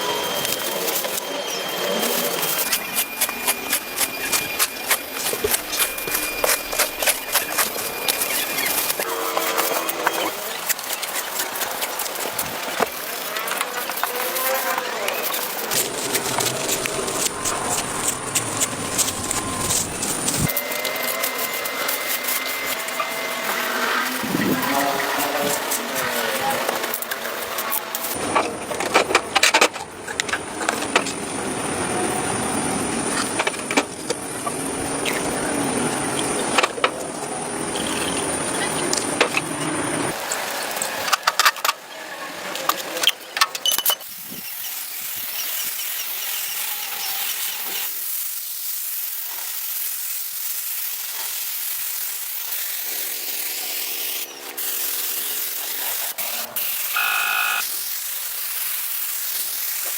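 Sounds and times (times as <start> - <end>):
scraping and clicking hand work: 0.3 - 31.1
steady high hiss of air: 15.2 - 28.2.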